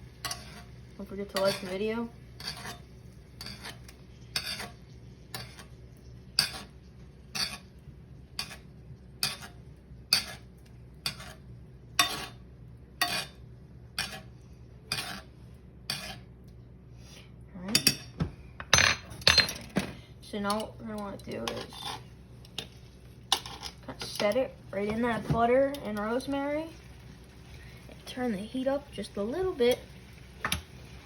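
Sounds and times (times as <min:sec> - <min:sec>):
metal spoon clinking against pan: 0:00.2 - 0:00.6, 0:01.3 - 0:01.7.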